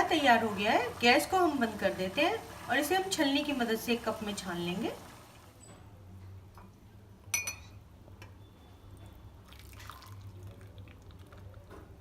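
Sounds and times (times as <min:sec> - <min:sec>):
liquid pouring through a sieve: 0:09.4 - 0:11.7
liquid trickling and dripping: 0:09.4 - 0:12.0.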